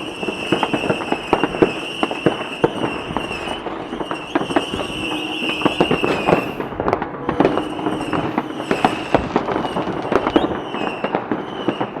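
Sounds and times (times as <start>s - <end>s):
fireworks bangs and crackling: 0.0s - 12.0s
steady high-pitched tone: 4.7s - 9.8s.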